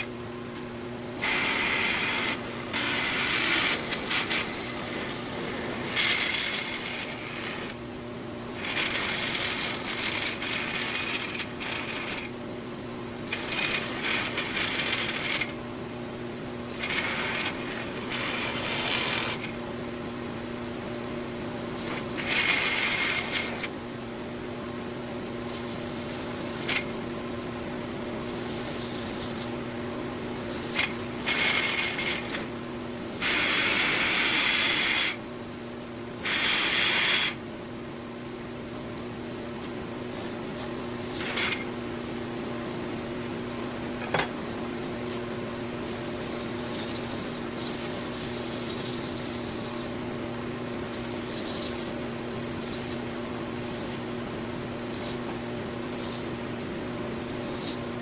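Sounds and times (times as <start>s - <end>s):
blade grinding hiss: 1.2s - 7.8s, 8.5s - 12.3s, 13.2s - 15.5s, 16.7s - 19.5s, 21.8s - 23.7s, 25.5s - 26.9s, 28.3s - 29.6s, 30.5s - 32.4s, 33.1s - 35.2s, 36.2s - 37.4s, 40.1s - 41.7s, 45.8s - 50.0s, 50.8s - 53.0s, 53.6s - 54.1s, 54.8s - 55.3s, 55.9s - 56.3s, 57.2s - 57.9s.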